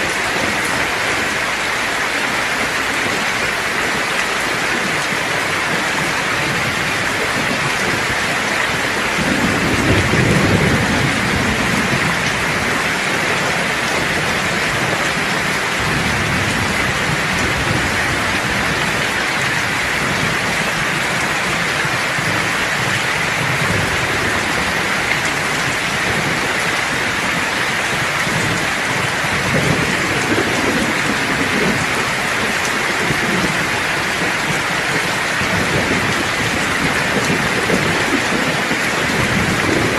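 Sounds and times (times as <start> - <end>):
steady rain falling: 0.0 - 39.9
low rolls of thunder: 4.4 - 39.9.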